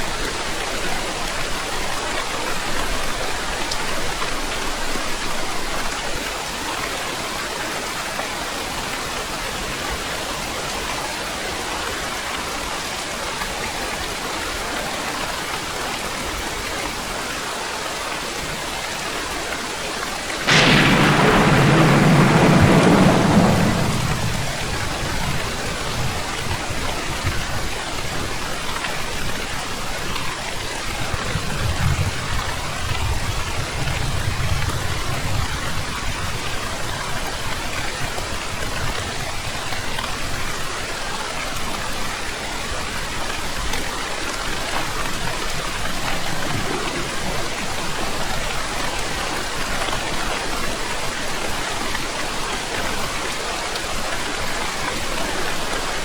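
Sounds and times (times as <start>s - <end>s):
heavy rain: 0.0s - 56.0s
loud thunderclap rumbling: 20.4s - 27.6s
low roll of thunder: 20.4s - 27.7s, 44.8s - 49.2s.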